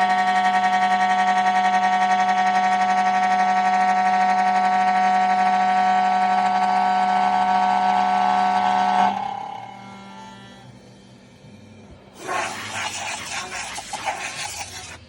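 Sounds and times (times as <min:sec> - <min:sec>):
milling machine spindle whine: 0:00.0 - 0:11.2.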